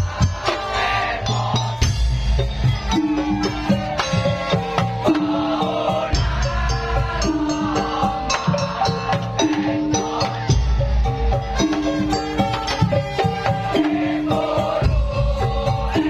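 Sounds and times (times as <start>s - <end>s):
music with percussive beat: 0.0s - 16.0s.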